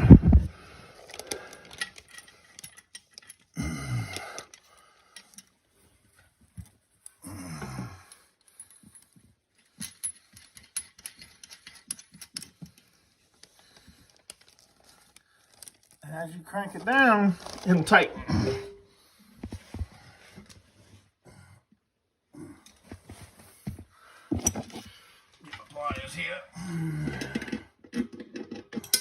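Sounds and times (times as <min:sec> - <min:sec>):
person grunting: 0:03.6 - 0:04.3, 0:18.1 - 0:18.6, 0:26.6 - 0:27.6.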